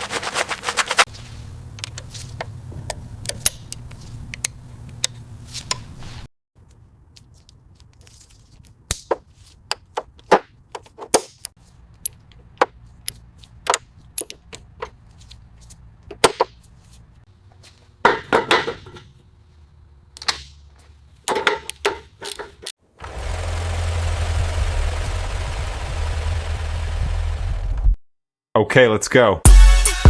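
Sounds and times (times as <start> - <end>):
hand tools clicking and knocking: 8.9 - 15.0, 16.0 - 16.6, 21.2 - 22.7.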